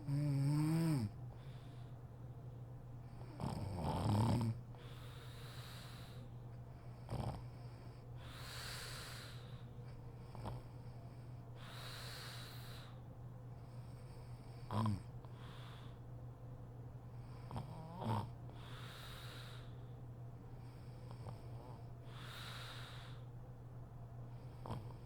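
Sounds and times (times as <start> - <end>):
woman snoring: 0.0 - 1.2, 3.3 - 4.6, 14.7 - 15.1, 17.5 - 18.9
long airy breaths: 1.3 - 3.3, 4.7 - 7.0, 7.9 - 10.2, 10.8 - 14.4, 15.2 - 16.3, 18.5 - 23.6.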